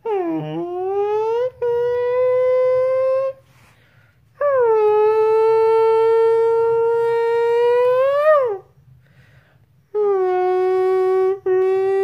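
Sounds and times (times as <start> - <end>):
short breath: 3.4 - 4.3, 9.0 - 9.8.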